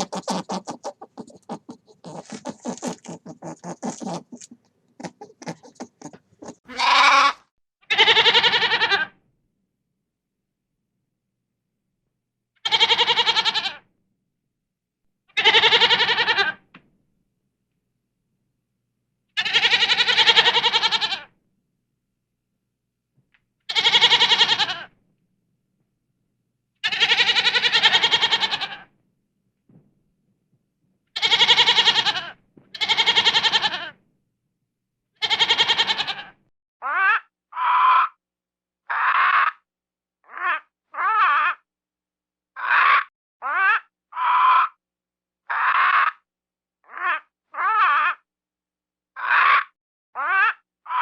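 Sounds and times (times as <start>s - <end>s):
goat bleating: 0.0s - 9.1s, 12.7s - 13.8s, 15.4s - 16.6s, 19.4s - 21.3s, 23.7s - 24.9s, 26.8s - 28.9s, 31.2s - 33.9s, 35.2s - 36.3s.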